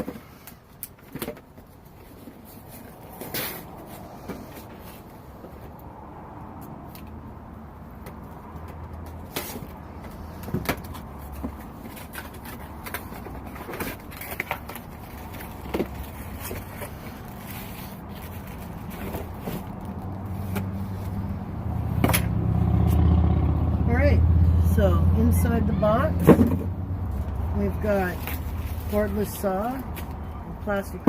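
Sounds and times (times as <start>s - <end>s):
cardboard crackling and scraping: 9.0s - 21.3s, 26.3s - 30.2s.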